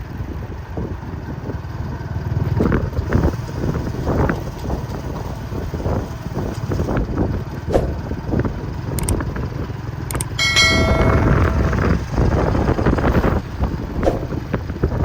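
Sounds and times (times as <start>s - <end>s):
diesel locomotive rumbling: 0.0s - 15.0s
scattered clicks: 9.0s - 9.2s, 10.1s - 11.7s
high ringing metallic tone: 10.4s - 12.5s.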